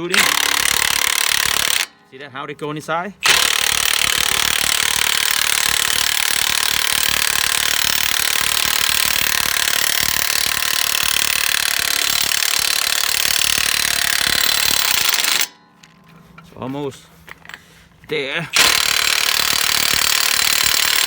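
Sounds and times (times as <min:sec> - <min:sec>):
impact wrench hammering: 0:00.0 - 0:02.0, 0:03.2 - 0:16.0, 0:18.6 - 0:21.0.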